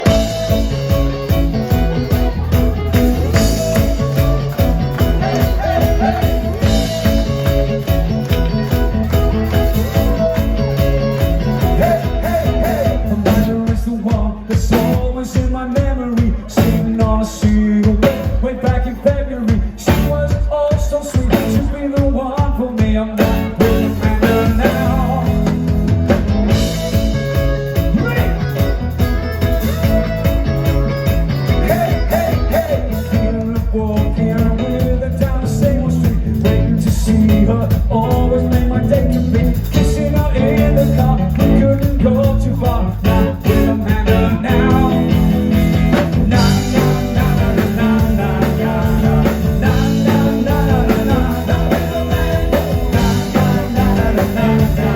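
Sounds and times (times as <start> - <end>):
person singing: 0.0 - 25.8, 31.3 - 54.9
rock band playing: 0.0 - 54.9.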